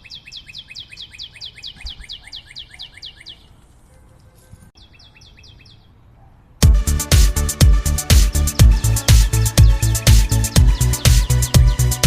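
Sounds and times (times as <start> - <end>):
bird trilling: 0.0 - 3.6.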